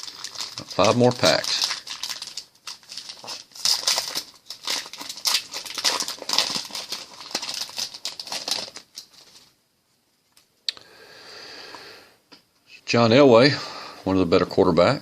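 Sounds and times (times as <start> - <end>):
foil wrapper crinkling: 0.0 - 9.6.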